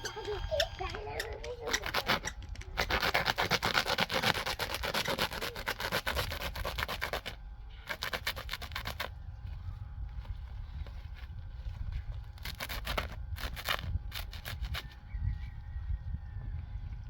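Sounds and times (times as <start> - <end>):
rapid rubbing strokes: 0.0 - 9.1, 11.6 - 15.0.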